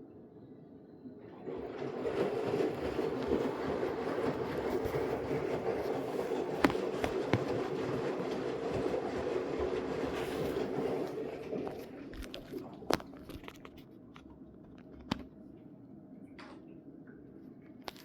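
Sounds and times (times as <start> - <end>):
washing machine drum tumbling: 1.4 - 13.4.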